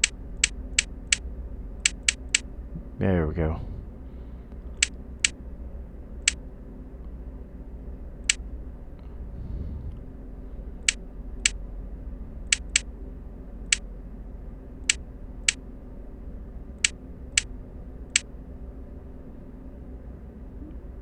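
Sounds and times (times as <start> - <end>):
machine clicks: 0.0 - 1.2, 1.8 - 2.4, 12.5 - 12.8
low steady hum: 0.0 - 21.0.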